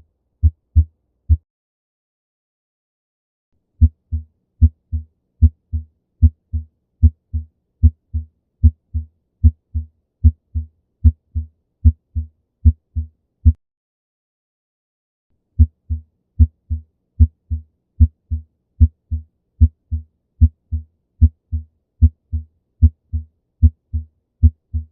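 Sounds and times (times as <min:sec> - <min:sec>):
heartbeat lub-dub: 0:15.6 - 0:24.9.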